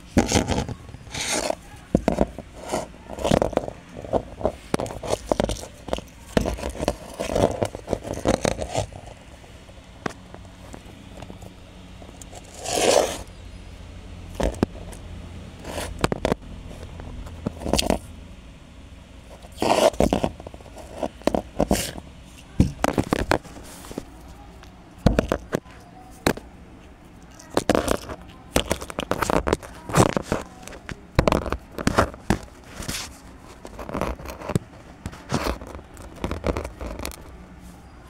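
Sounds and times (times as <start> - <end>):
rock scraping and crunching: 0.0 - 9.2, 12.1 - 13.3, 19.4 - 22.0.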